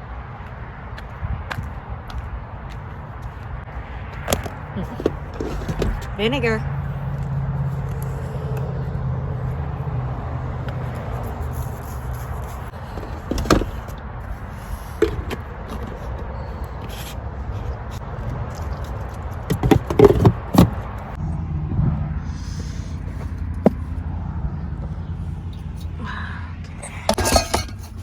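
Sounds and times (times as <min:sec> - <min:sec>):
knocks and clatters of handling: 0:04.2 - 0:06.2, 0:12.7 - 0:14.0, 0:14.6 - 0:21.0, 0:26.7 - 0:28.0.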